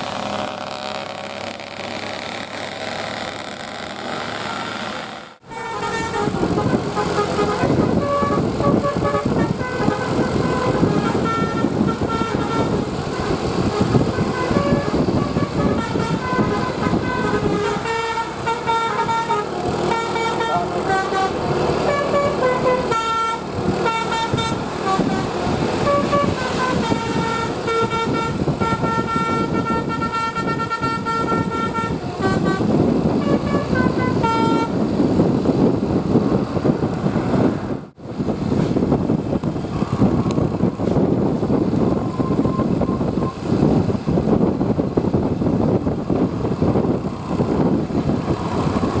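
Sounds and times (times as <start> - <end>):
multi-note air horn tune: 0.0 - 34.8
steady rumble: 0.0 - 49.0.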